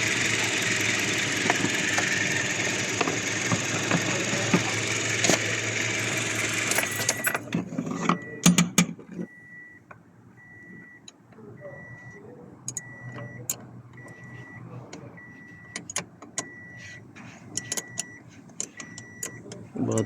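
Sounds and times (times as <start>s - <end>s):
vehicle engine running: 0.0s - 20.0s
sharp clicks and knocks: 1.4s - 5.5s, 6.6s - 9.3s, 15.7s - 16.6s
short electronic beeps: 6.8s - 7.4s, 8.1s - 8.4s, 9.2s - 9.8s, 10.4s - 20.0s.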